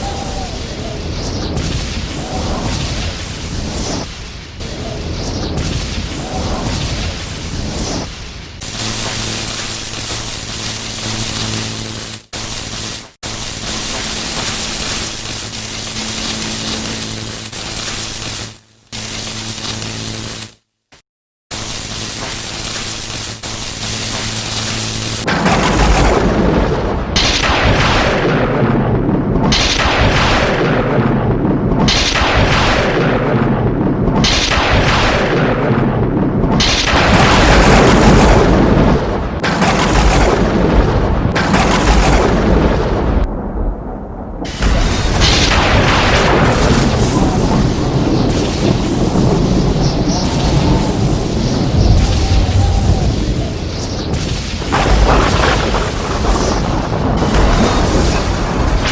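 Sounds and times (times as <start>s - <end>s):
lightning cracks and booms: 0.0s - 20.6s, 21.5s - 58.9s
crackling electrical buzz: 6.8s - 26.0s, 44.5s - 58.9s
low hum: 8.6s - 20.6s.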